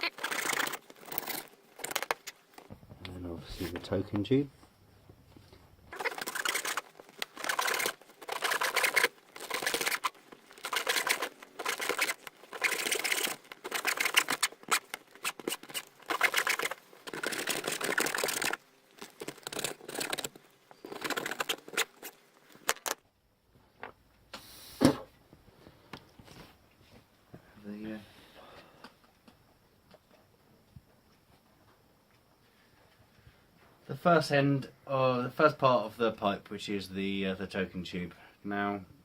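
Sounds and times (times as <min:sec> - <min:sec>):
hacksaw cutting wood: 0:05.9 - 0:18.6.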